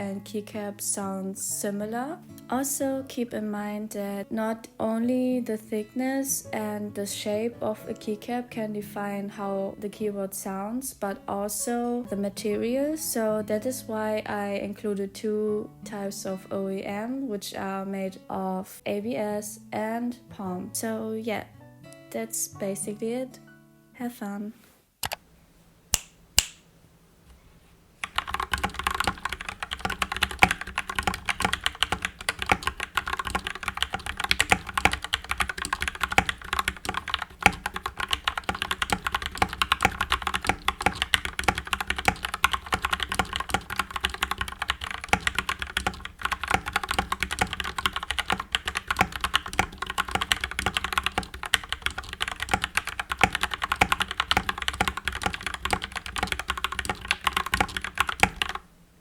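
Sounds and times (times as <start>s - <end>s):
mechanical keyboard typing: 28.0s - 58.6s.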